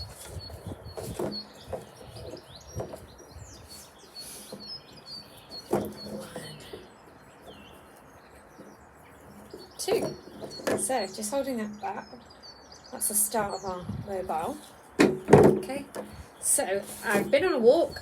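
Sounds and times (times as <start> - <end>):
knocks and rustles of sticks: 0.0 - 11.0, 14.5 - 16.2
small birds chirping: 0.0 - 18.0.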